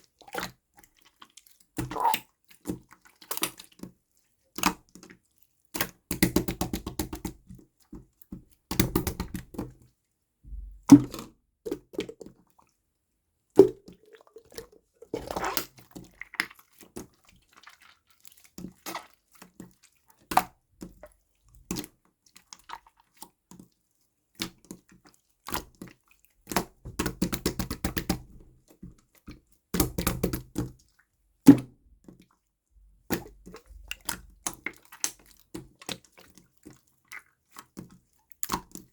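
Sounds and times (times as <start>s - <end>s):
slime squished by hand: 15.1s - 16.4s.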